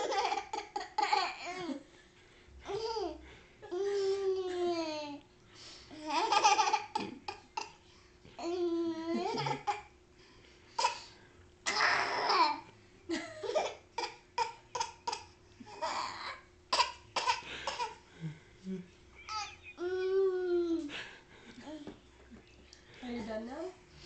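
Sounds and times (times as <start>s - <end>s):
baby laughing and babbling: 8.4s - 9.9s, 14.4s - 17.9s, 19.2s - 20.9s.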